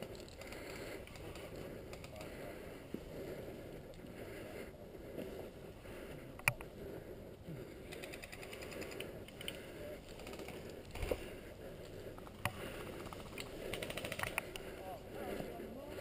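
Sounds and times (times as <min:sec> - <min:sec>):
airsoft gun rapid clicks: 0:00.0 - 0:02.3, 0:07.9 - 0:11.2, 0:12.1 - 0:14.7.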